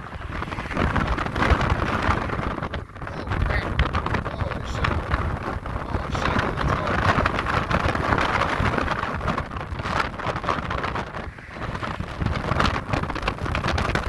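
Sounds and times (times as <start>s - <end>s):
storm wind buffeting microphone: 0.0s - 14.0s.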